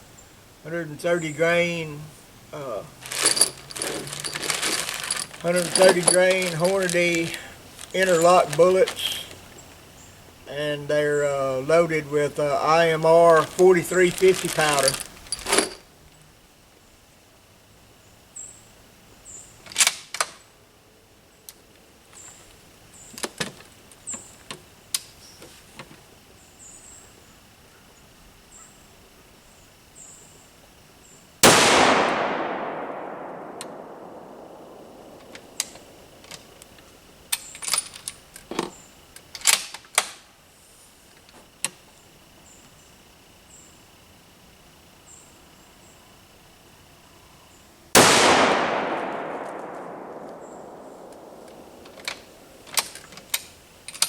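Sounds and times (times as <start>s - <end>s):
rifle shot with echo: 31.4s - 36.2s, 48.0s - 52.6s
rifle bolt metallic clicks: 31.4s - 36.4s.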